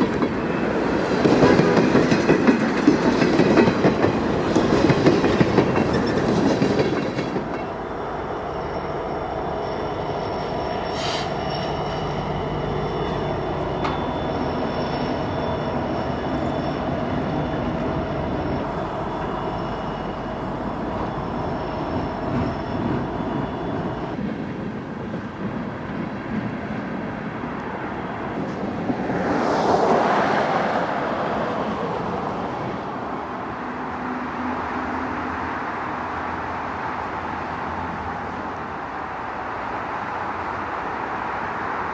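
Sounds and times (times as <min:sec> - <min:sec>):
train wheels clacking: 0:00.0 - 0:07.8
high-pitched wheel squeals: 0:07.6 - 0:24.2.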